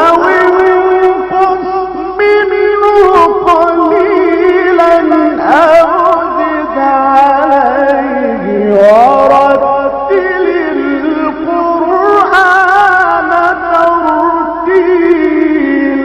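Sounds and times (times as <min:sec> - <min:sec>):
man reciting melodically: 0:00.0 - 0:16.0.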